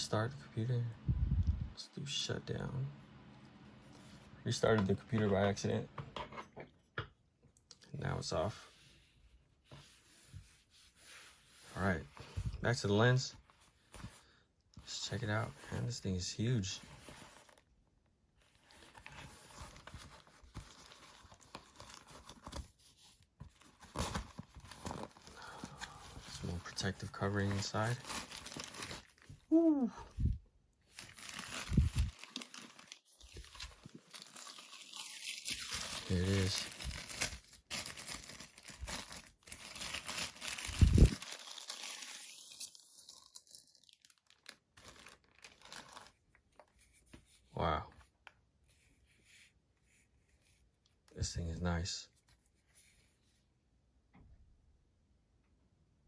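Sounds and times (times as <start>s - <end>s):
plastic packaging crinkling: 18.5s - 22.7s, 23.5s - 29.5s, 30.8s - 46.7s.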